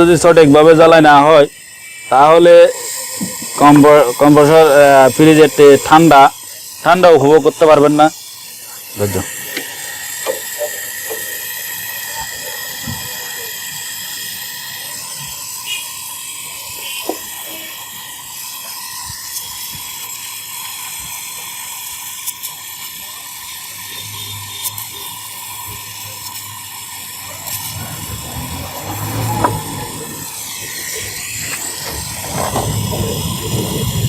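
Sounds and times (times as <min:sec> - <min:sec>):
brazing torch flame hissing: 0:00.0 - 0:34.0
low hum: 0:27.2 - 0:34.0.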